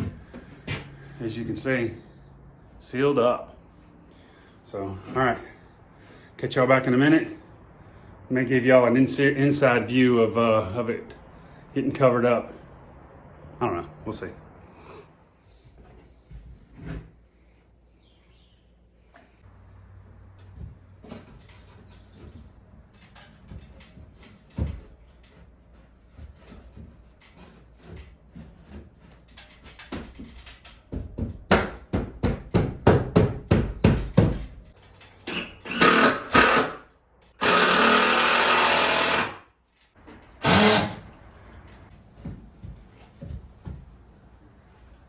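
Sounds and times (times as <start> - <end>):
power drill running: 35.3 - 36.8, 37.4 - 39.4, 40.4 - 41.1.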